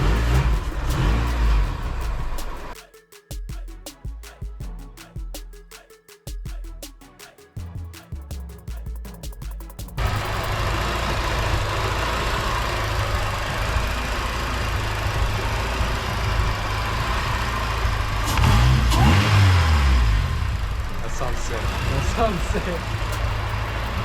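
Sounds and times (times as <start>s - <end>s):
car engine idling and revving: 0.0s - 2.8s, 9.9s - 24.0s
music: 0.0s - 20.0s.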